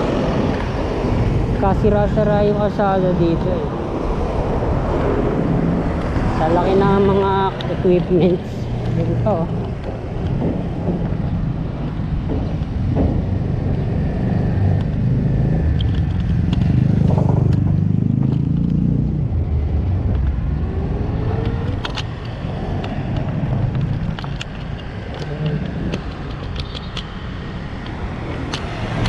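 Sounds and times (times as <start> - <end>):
road and traffic noise: 0.0 - 29.0
vehicle engine running: 5.2 - 24.4.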